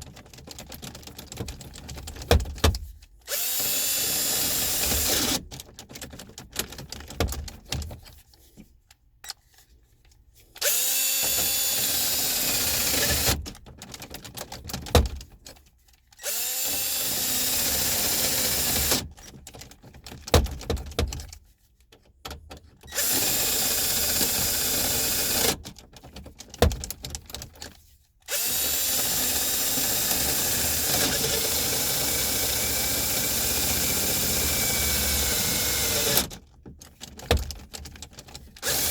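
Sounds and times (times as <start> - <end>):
power drill boring: 3.3 - 5.4, 10.6 - 13.4, 16.2 - 19.0, 22.9 - 25.6, 28.3 - 36.3, 38.6 - 38.9.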